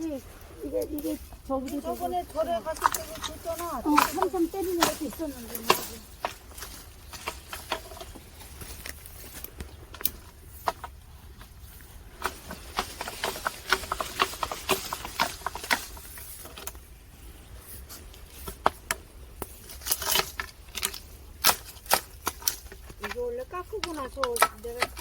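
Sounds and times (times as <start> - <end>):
plums dropping with sharp taps: 2.7 - 11.0, 18.4 - 25.0.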